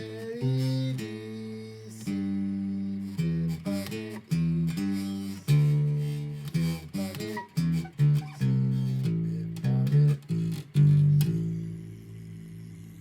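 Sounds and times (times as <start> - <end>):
plucked low notes: 6.6 - 13.0.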